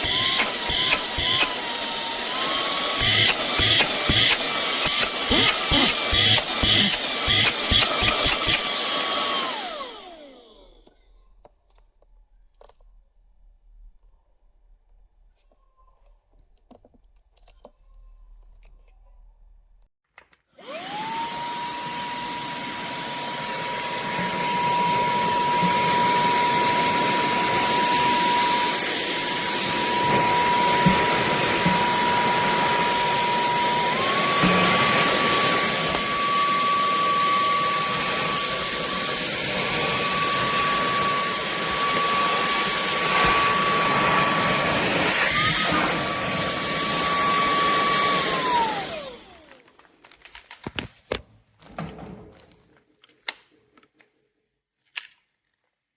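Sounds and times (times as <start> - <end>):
handheld vacuum cleaner running: 0.0 - 11.0, 20.6 - 49.7.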